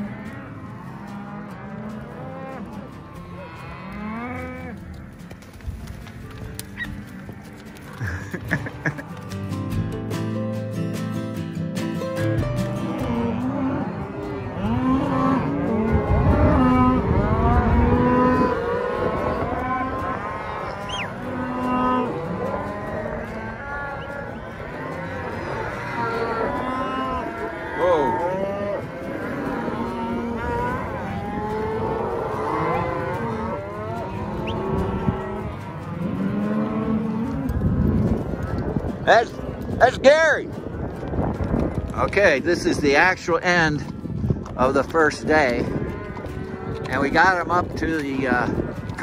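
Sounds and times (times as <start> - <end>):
cattle bawling and mooing: 0.0 - 5.2, 12.7 - 43.0, 45.0 - 47.3.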